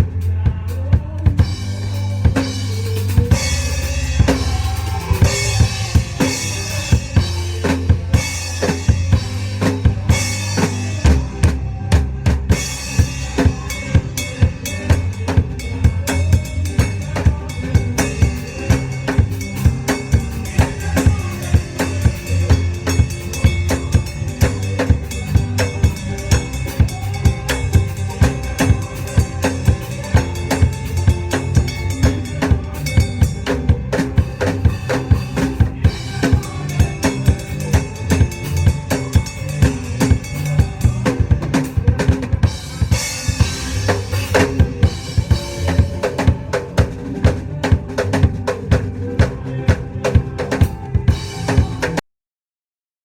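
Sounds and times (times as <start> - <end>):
steady low drone: 0.0 - 52.0
drum kit cymbal crashes: 12.5 - 47.0.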